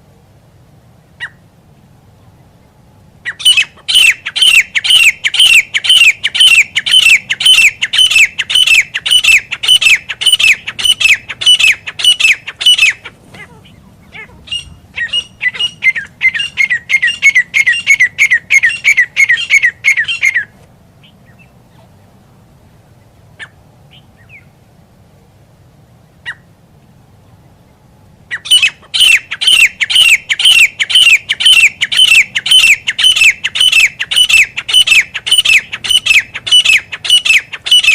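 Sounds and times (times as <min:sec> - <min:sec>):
francolin squawking call: 0:03.2 - 0:22.0, 0:23.4 - 0:24.5, 0:26.2 - 0:26.5, 0:28.3 - 0:37.9.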